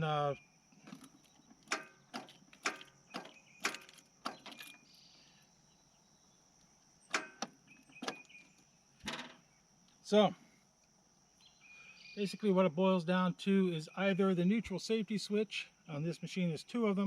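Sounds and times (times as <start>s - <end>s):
crickets chirring: 0.0s - 17.0s
tractor switches clicking: 1.6s - 4.6s, 7.1s - 8.4s.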